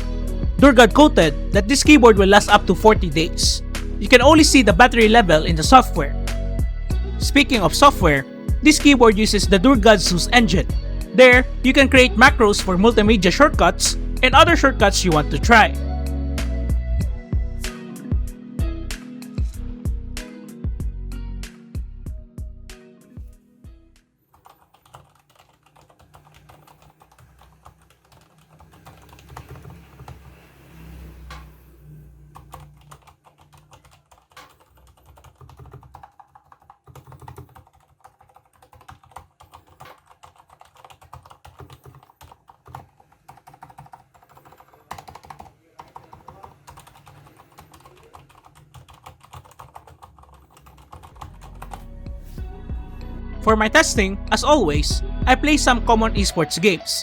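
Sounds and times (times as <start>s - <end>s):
fast typing on soft keyboard: 24.3s - 30.3s, 32.4s - 51.8s.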